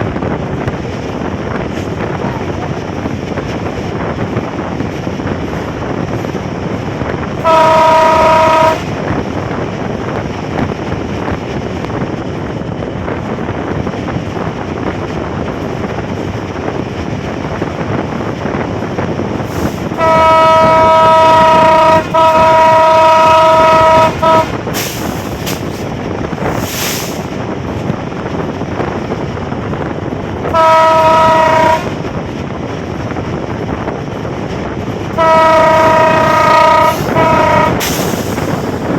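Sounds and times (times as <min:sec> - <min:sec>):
train rumbling on rails: 0:00.0 - 0:38.9
train horn three-note chord: 0:07.4 - 0:09.0, 0:20.0 - 0:24.6, 0:30.5 - 0:32.0, 0:35.2 - 0:37.9.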